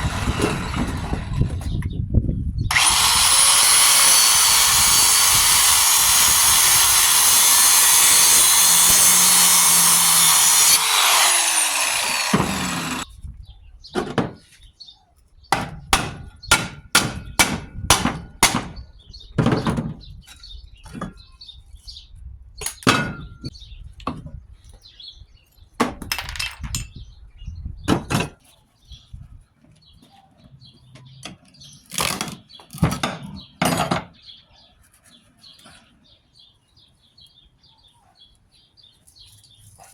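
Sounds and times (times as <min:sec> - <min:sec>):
power tool running: 0:00.0 - 0:01.6, 0:02.7 - 0:13.1.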